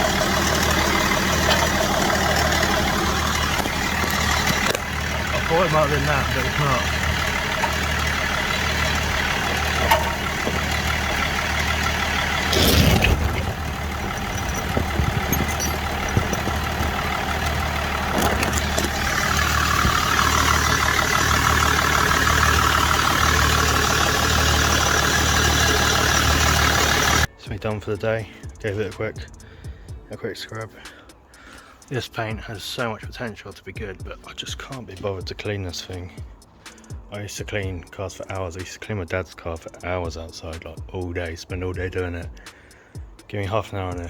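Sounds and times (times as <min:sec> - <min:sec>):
car engine idling: 0:00.0 - 0:27.3, 0:28.1 - 0:44.0
engine knock: 0:00.0 - 0:27.3.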